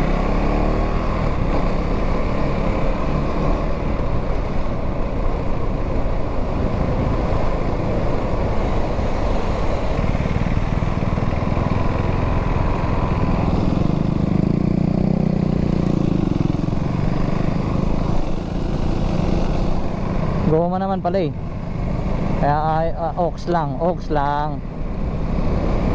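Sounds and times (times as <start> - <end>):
motorcycle engine running: 0.0 - 25.9
steady rushing noise: 0.0 - 25.9.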